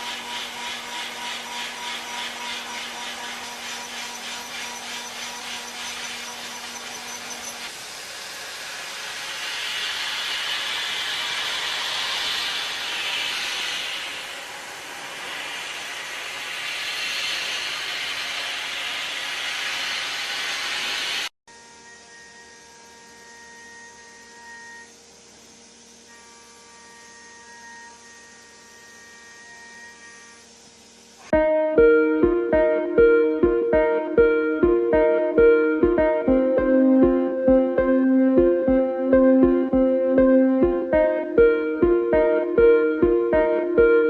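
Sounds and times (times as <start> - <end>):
milling machine cutting metal: 0.0 - 31.3
machine hum with held tones: 0.0 - 44.0.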